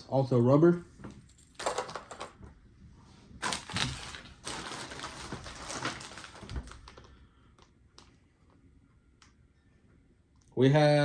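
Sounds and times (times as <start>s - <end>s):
plastic packaging crinkling: 3.4s - 7.2s.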